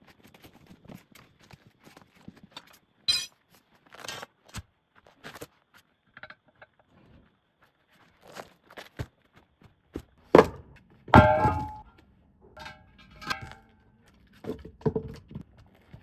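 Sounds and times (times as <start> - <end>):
metal tools clinking: 11.2 - 11.8, 12.6 - 13.6.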